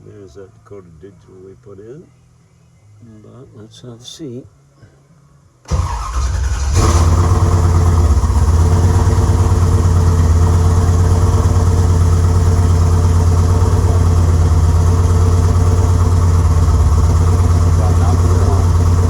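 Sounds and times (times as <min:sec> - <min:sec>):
car engine starting and idling: 0:05.7 - 0:19.0.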